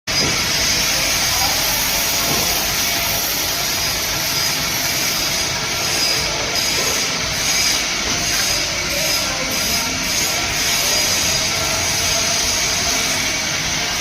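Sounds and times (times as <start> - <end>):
lathe running: 0.1 - 14.0.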